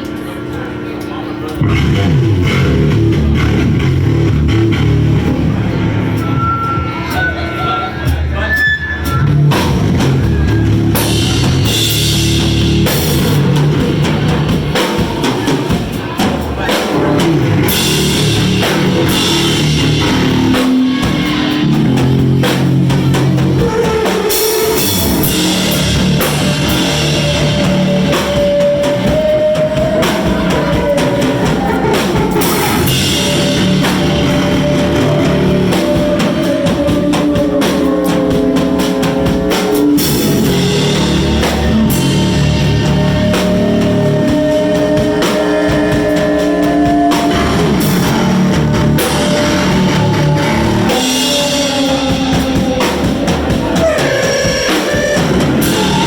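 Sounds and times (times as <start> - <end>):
drum kit with cymbal hits: 0.0 - 56.0
guitar chords: 1.6 - 7.5, 17.0 - 56.0.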